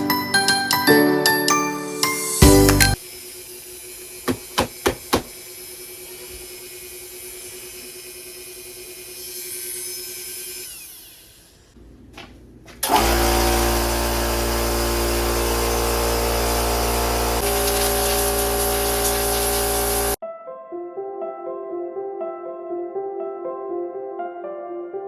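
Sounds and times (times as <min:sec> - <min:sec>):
rotary tool grinding: 0:03.0 - 0:11.8, 0:12.8 - 0:20.2.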